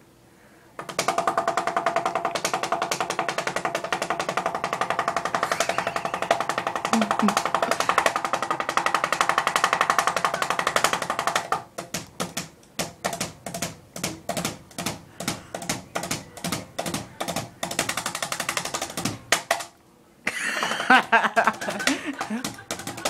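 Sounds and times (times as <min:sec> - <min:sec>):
fan blades slapping a hand: 0:00.8 - 0:19.7, 0:20.6 - 0:23.0.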